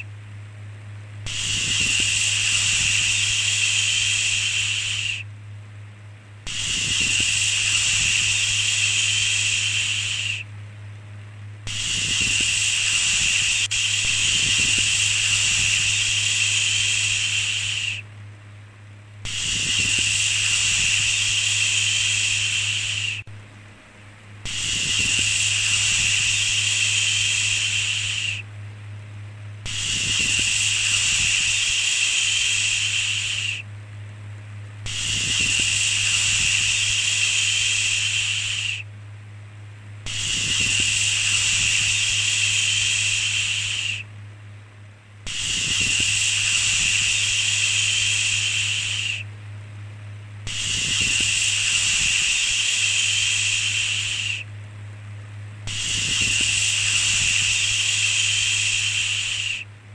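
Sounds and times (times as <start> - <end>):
steady low hum: 0.0 - 59.9
person shushing: 11.7 - 18.0, 19.3 - 23.3, 24.5 - 28.4, 29.7 - 33.6, 50.5 - 54.4, 55.7 - 59.6.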